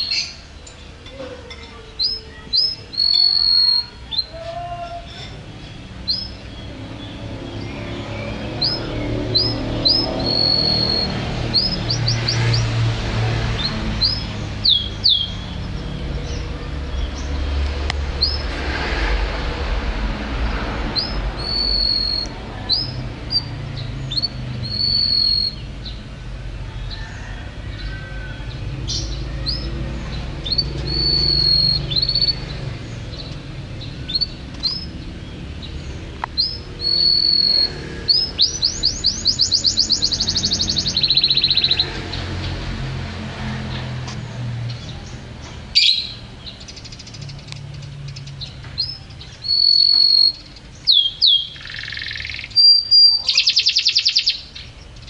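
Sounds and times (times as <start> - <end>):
canary singing: 0.0 - 18.6, 20.8 - 42.9, 44.7 - 55.0.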